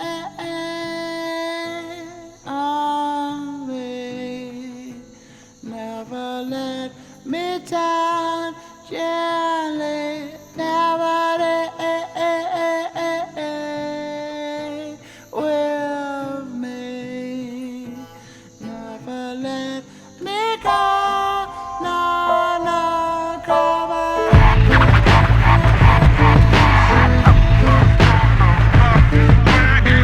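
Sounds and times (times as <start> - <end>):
person singing long notes: 20.2 - 30.0.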